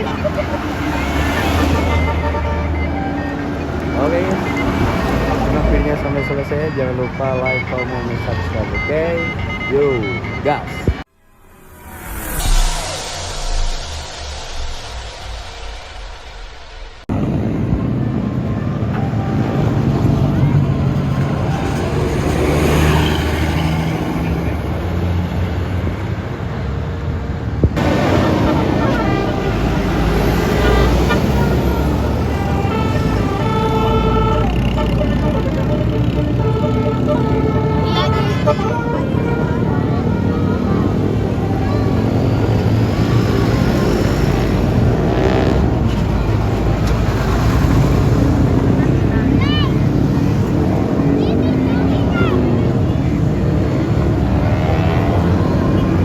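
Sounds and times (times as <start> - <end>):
traffic noise: 0.0 - 56.0
vehicle engine droning: 0.0 - 56.0.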